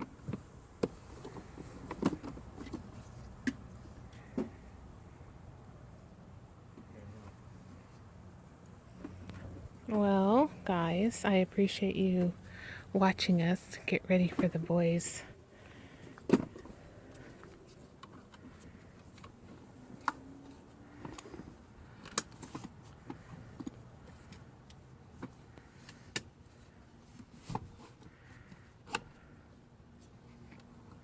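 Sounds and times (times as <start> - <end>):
handling clicks and knocks: 0.1 - 4.6.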